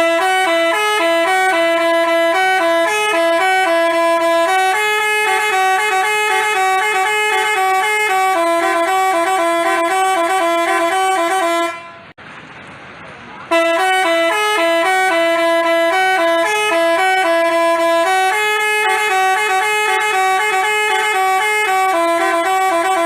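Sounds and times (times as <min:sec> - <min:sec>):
multi-tone bus horn melody: 0:00.0 - 0:12.2, 0:13.5 - 0:23.0.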